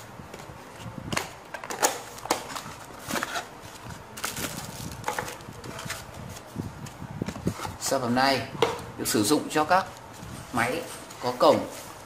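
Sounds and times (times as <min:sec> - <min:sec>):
packaging crinkling: 0:01.6 - 0:06.1.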